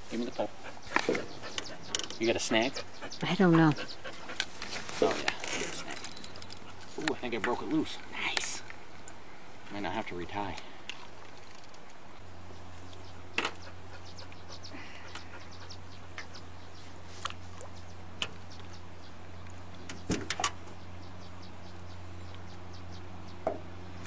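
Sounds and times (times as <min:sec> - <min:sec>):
low motor hum: 0:11.9 - 0:24.0.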